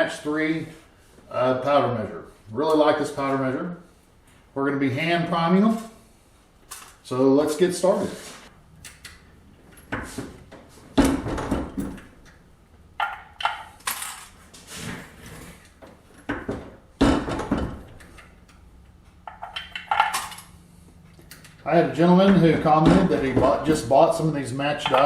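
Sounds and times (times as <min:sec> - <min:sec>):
brass cases clinking and rattling: 0:13.0 - 0:14.5, 0:19.2 - 0:20.6.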